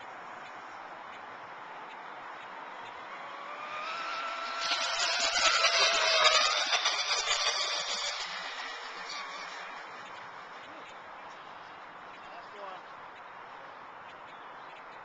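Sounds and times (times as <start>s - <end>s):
motorboat engine whine: 2.7s - 10.9s.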